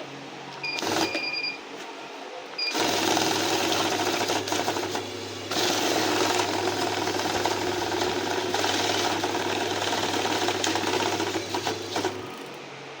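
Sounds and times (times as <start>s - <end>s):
banknotes fluttering through machine: 0.7s - 1.5s, 2.7s - 12.5s
counting machine motor humming: 2.6s - 12.6s.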